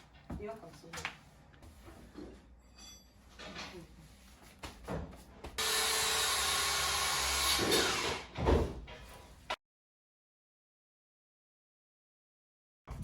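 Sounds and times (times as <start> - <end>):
power tool running: 5.6 - 8.3.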